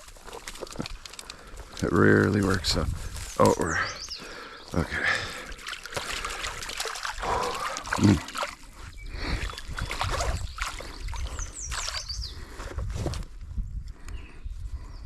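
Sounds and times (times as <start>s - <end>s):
water splashing and sloshing: 4.3s - 13.2s
high bird chirps: 8.8s - 12.4s.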